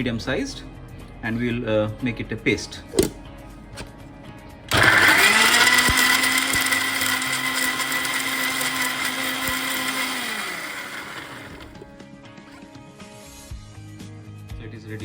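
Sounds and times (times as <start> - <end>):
electric blender motor whirring: 4.7 - 12.0.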